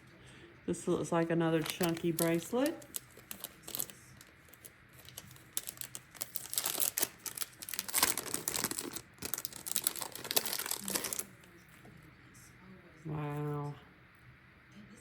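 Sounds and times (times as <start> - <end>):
plastic packaging crinkling: 1.3 - 11.4.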